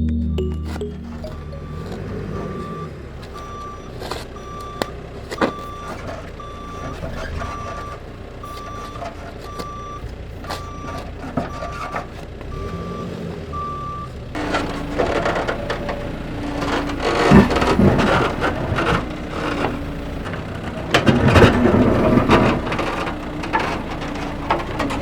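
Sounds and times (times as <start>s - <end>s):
reversing alarm beeping: 0.0s - 4.8s, 12.5s - 14.1s.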